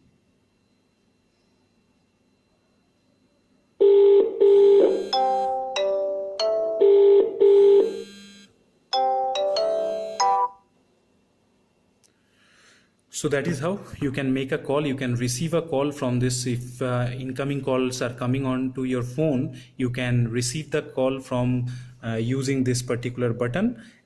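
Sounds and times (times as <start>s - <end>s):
phone ringtone melody: 3.8s - 8.3s, 8.9s - 10.7s.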